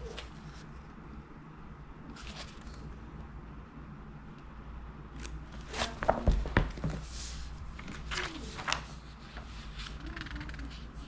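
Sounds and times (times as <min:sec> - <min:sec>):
paper pages rustling: 0:02.1 - 0:02.9, 0:05.5 - 0:10.8.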